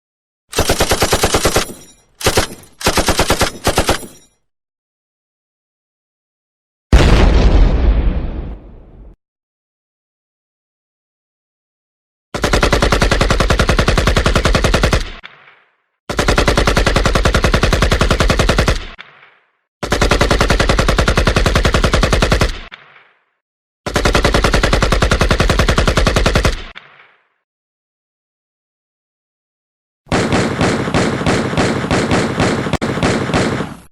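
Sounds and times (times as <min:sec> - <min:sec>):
machine-gun fire bursts: 0:00.5 - 0:04.2, 0:12.4 - 0:15.2, 0:16.1 - 0:19.0, 0:19.8 - 0:22.7, 0:23.9 - 0:26.8, 0:30.1 - 0:33.9.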